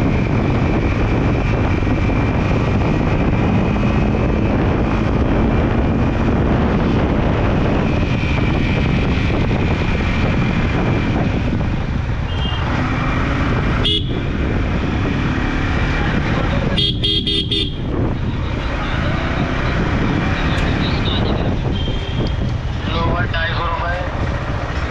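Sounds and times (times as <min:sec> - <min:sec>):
road rumble: 0:00.0 - 0:24.9
wind on microphone: 0:00.0 - 0:24.9
vehicle horn beeping: 0:12.3 - 0:12.7, 0:13.8 - 0:14.3, 0:16.8 - 0:17.9, 0:20.5 - 0:22.4.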